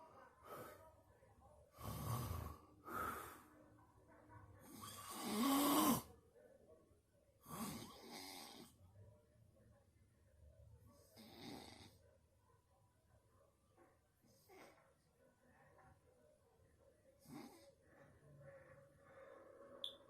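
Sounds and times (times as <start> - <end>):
person snoring: 4.8 - 6.1.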